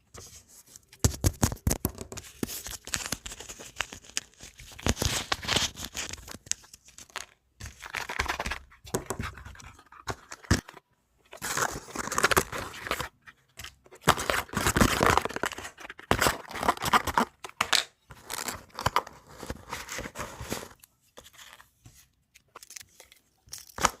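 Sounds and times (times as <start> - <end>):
packaging crinkling and tearing: 2.4 - 8.5, 11.4 - 13.1, 14.0 - 20.8, 22.4 - 24.0.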